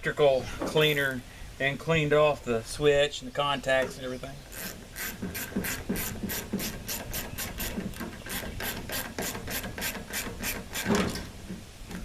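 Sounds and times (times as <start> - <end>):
screwdriver scraping strokes: 4.5 - 11.3.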